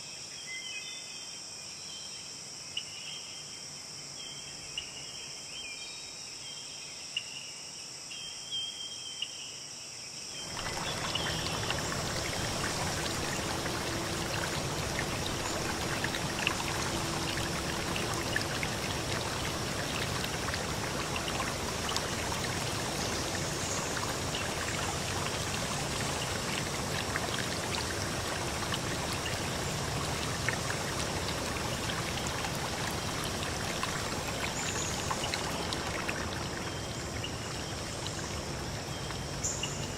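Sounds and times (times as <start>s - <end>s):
insects chirring: 10.3s - 39.9s
stream water flowing: 10.4s - 39.9s
water splashes and drips: 10.4s - 39.9s.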